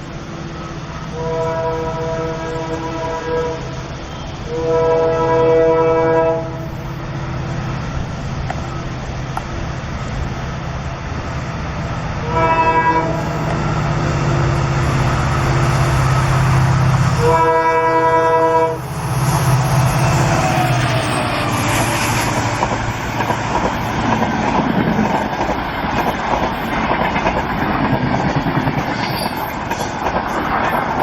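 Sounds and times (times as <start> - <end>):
low train rumble: 0.0 - 31.0
train horn blasts: 1.1 - 6.9, 12.2 - 14.5, 15.4 - 20.4.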